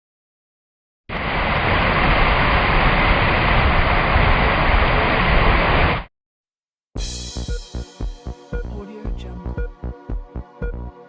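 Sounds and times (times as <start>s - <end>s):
steady rushing noise: 1.1s - 6.1s.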